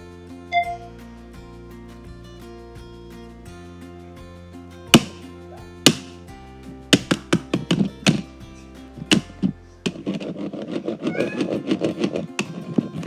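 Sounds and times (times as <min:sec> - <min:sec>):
light background music: 0:00.0 - 0:13.0
sharp chopping taps: 0:05.0 - 0:06.2, 0:07.0 - 0:08.3, 0:09.0 - 0:10.4, 0:11.1 - 0:12.6.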